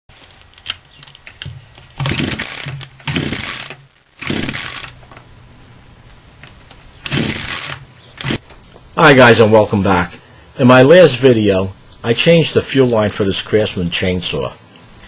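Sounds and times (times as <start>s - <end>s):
chainsaw engine idling: 7.1s - 8.4s.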